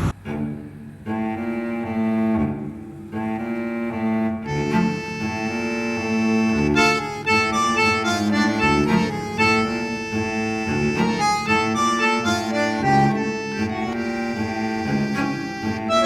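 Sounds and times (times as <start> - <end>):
instrumental tune over low drone: 4.4 - 16.0.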